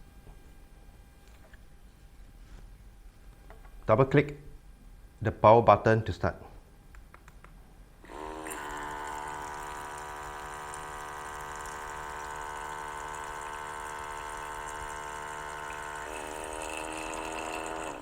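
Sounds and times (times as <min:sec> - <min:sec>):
electric pump humming: 0:08.0 - 0:18.0.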